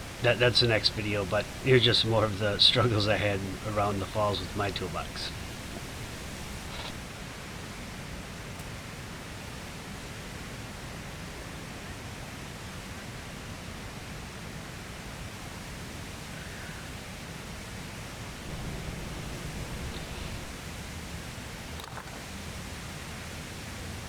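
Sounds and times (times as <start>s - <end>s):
waterfall roaring: 0.0s - 7.0s, 18.4s - 24.0s.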